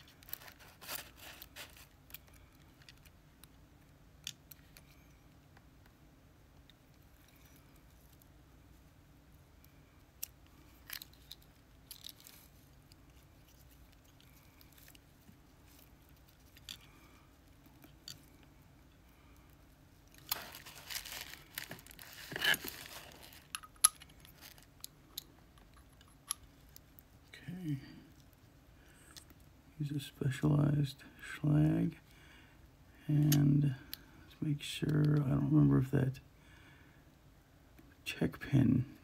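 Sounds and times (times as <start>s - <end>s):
metal lock parts clicking and rattling: 22.2s - 26.5s.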